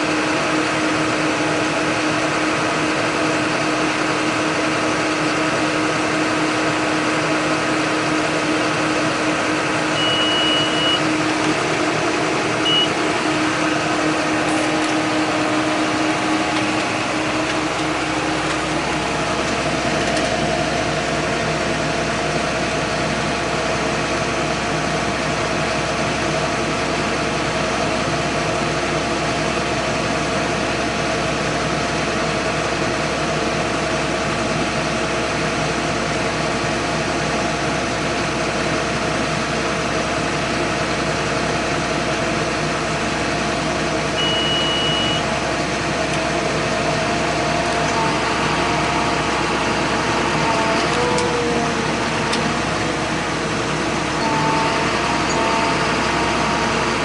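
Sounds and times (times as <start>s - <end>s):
tractor diesel engine running: 0.0s - 57.0s
deeper hum: 6.5s - 23.9s, 44.2s - 57.0s
short high beep: 10.0s - 11.1s, 12.6s - 13.0s, 44.2s - 45.2s.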